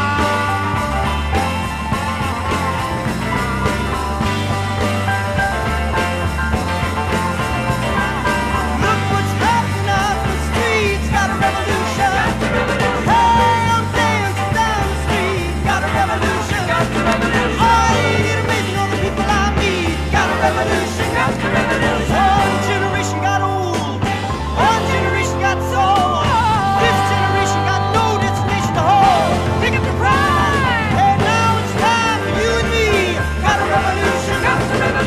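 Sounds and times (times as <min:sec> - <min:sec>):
rock band with bass and drums: 0:00.0 - 0:35.0
people singing: 0:08.3 - 0:35.0.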